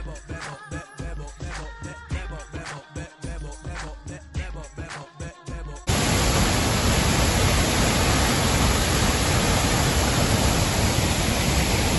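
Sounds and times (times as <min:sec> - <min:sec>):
music: 0:00.0 - 0:05.9
waterfall rushing: 0:05.9 - 0:11.9.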